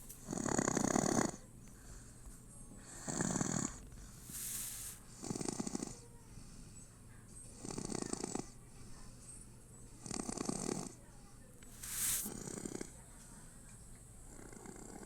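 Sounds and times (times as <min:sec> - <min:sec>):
baby snoring: 0:00.2 - 0:01.4, 0:02.9 - 0:06.0, 0:11.8 - 0:12.9
soft breathy hiss: 0:01.7 - 0:07.0, 0:11.2 - 0:13.7.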